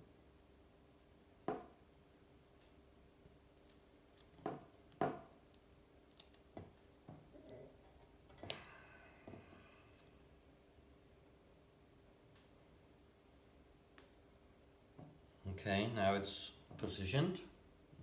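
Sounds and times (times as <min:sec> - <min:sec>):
soft rustle: 0:02.4 - 0:04.4.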